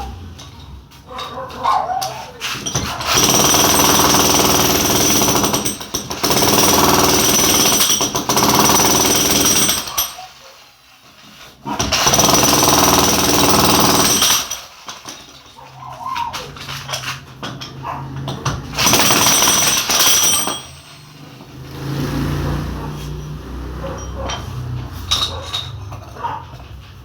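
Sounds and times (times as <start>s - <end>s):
jackhammer chipping concrete: 2.6s - 10.3s, 11.7s - 15.4s, 18.1s - 22.8s.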